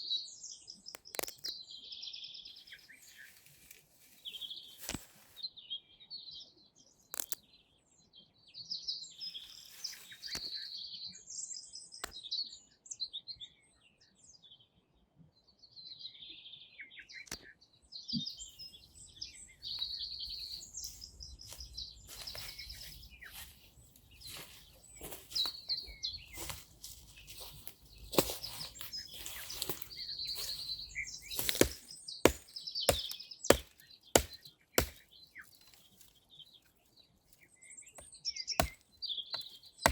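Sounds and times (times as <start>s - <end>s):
songbirds chirping: 0.0s - 39.9s
sharp knocks and cracks: 31.3s - 35.8s, 38.0s - 39.9s.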